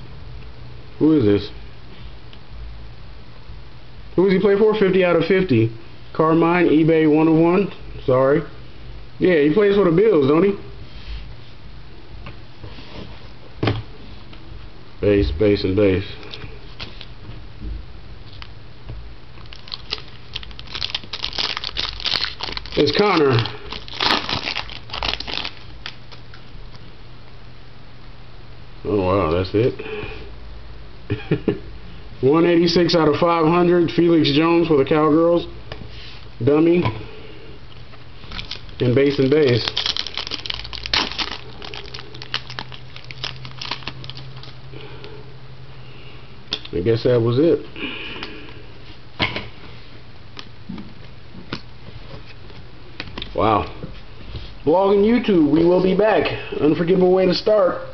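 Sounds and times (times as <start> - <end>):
card wrapper crinkling and tearing: 19.4 - 26.2, 38.2 - 44.6.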